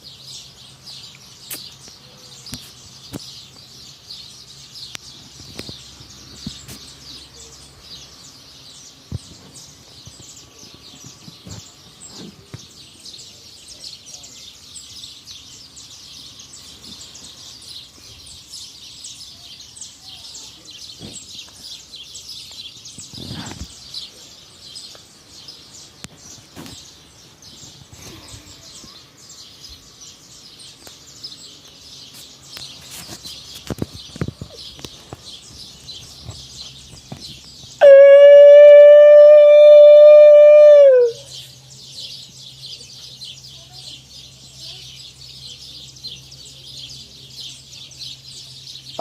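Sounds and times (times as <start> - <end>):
small birds chirping: 0.0 - 49.0
loud horn-like note: 37.8 - 41.1.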